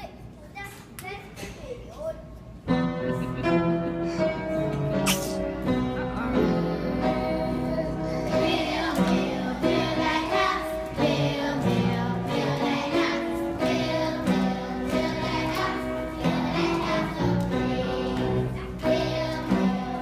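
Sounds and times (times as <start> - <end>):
piano: 2.6 - 20.0
children singing: 6.4 - 20.0.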